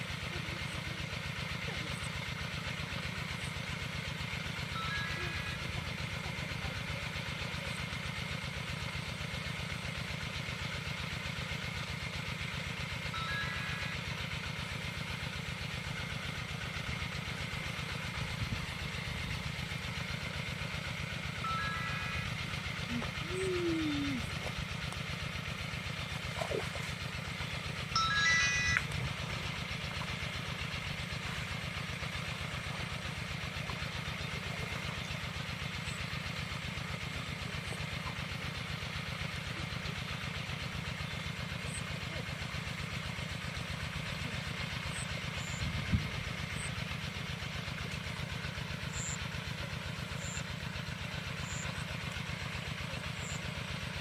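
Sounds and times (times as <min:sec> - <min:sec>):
small engine running: 0:00.0 - 0:54.0
high chirp: 0:28.0 - 0:29.0.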